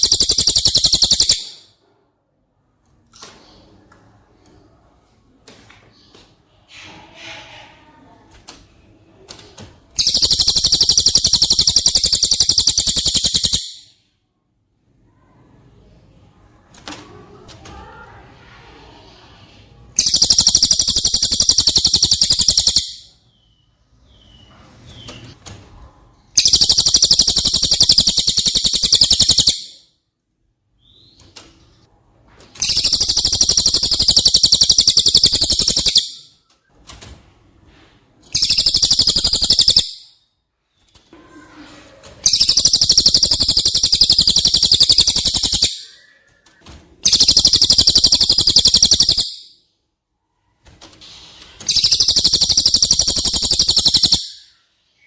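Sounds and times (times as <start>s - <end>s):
songbird high rattling trills: 0.0s - 1.6s, 10.0s - 13.7s, 20.0s - 23.0s, 26.4s - 29.6s, 32.6s - 36.2s, 38.4s - 39.9s, 42.3s - 45.9s, 47.0s - 49.4s, 51.7s - 54.3s.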